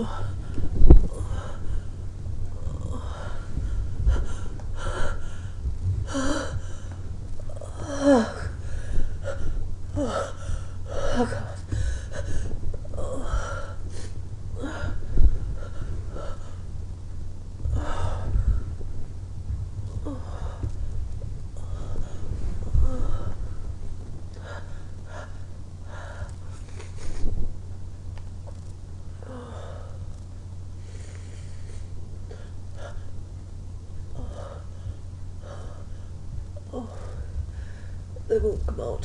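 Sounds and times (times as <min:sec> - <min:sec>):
person gasping and moaning: 0:02.6 - 0:16.6.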